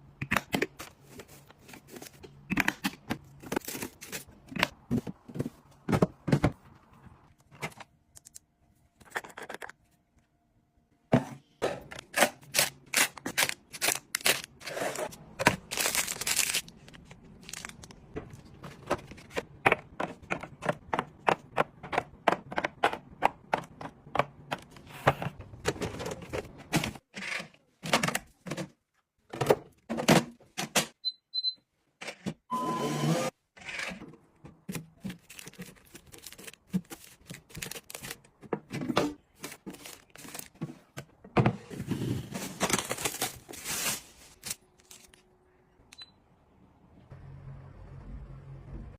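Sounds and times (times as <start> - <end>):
plastic packaging crinkling and tearing: 12.5 - 18.1, 35.0 - 38.3, 42.4 - 45.2.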